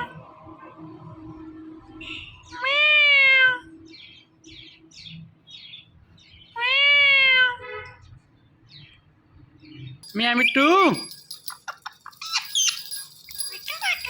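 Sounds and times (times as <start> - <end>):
parrot mimicking cat meow: 2.6 - 3.7, 6.6 - 7.6.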